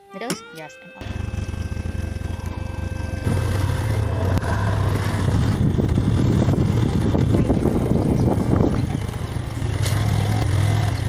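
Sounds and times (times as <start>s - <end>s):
vehicle rumble: 1.0s - 11.0s
wind noise on microphone: 3.3s - 9.4s.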